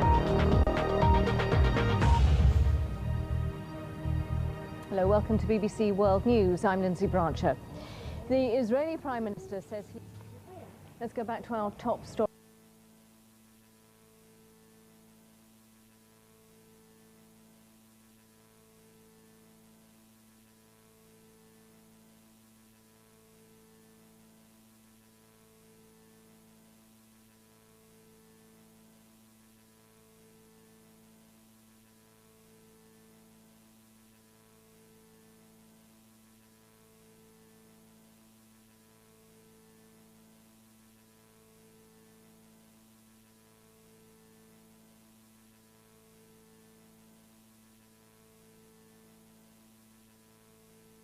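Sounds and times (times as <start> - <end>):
low electronic hum: 0.0 - 51.0.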